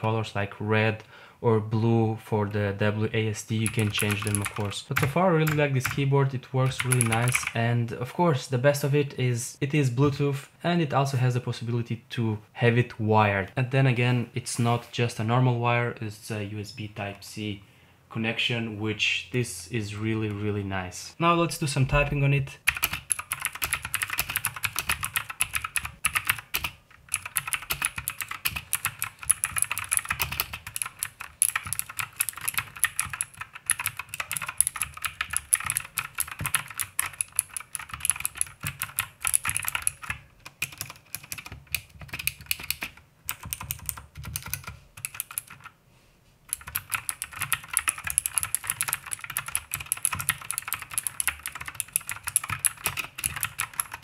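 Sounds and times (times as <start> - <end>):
fast typing on mechanical keyboard: 3.6 - 6.0, 6.7 - 7.6, 22.6 - 45.7, 46.5 - 54.0.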